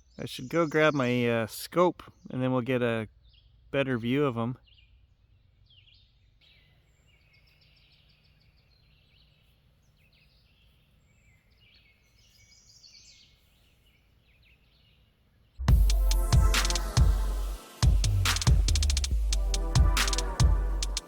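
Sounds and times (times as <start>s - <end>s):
songbirds chirping: 0.0s - 21.0s
loud background music: 15.7s - 21.0s.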